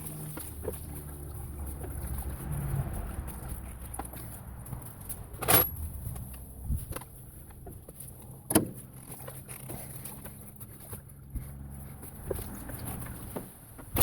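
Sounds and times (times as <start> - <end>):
tools clicking and rattling: 3.4 - 7.7
sharp metal clanks: 5.4 - 5.9.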